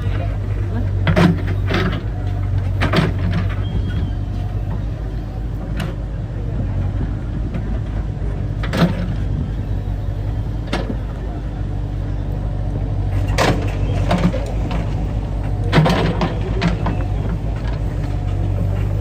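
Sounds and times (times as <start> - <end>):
motor engine running: 0.0 - 19.0.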